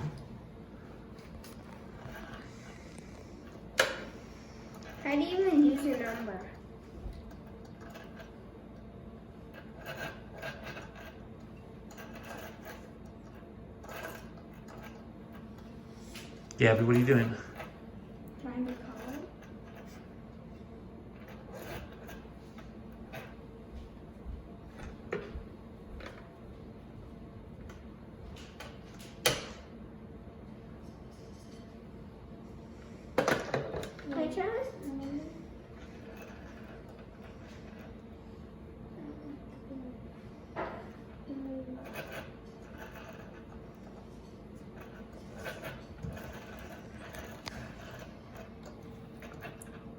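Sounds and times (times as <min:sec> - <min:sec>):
rotary telephone dial whirring: 0:00.0 - 0:23.5, 0:33.6 - 0:49.9.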